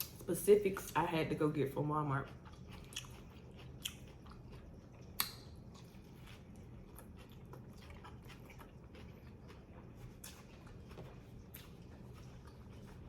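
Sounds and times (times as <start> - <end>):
chewing sandwich: 2.0 - 13.0
wet mouth clicks: 5.1 - 5.5.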